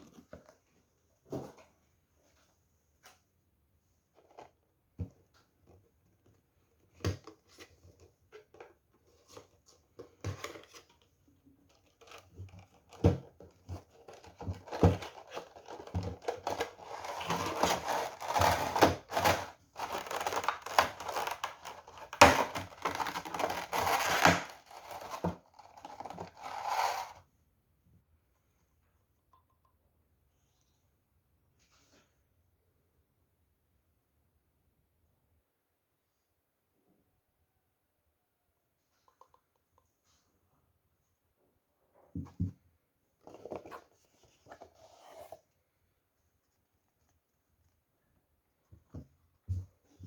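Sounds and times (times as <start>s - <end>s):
packaging crinkling and tearing: 14.6s - 27.1s.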